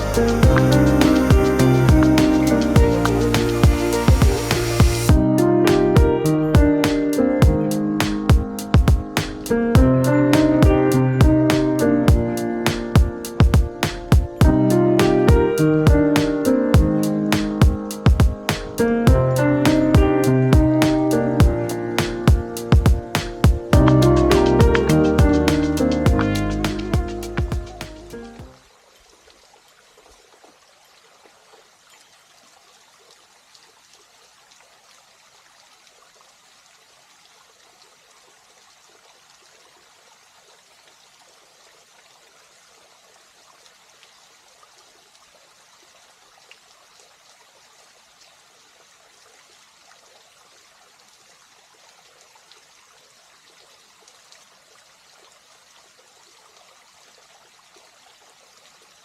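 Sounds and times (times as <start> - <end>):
waterfall rushing: 0.0 - 7.2.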